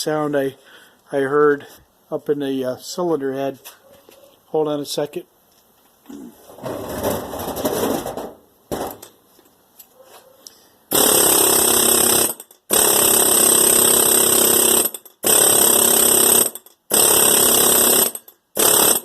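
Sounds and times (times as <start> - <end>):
pneumatic air hammer firing: 10.9 - 19.0.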